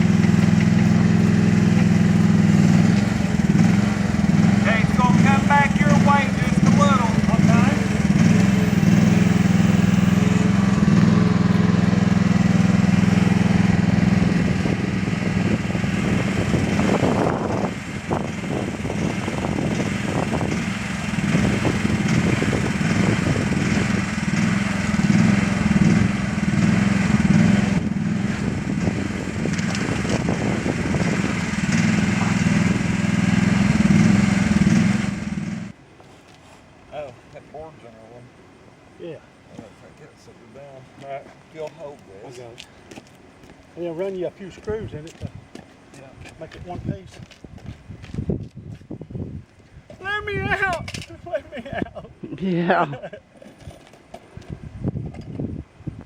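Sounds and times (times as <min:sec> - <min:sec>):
small diesel engine running: 0:00.0 - 0:35.8.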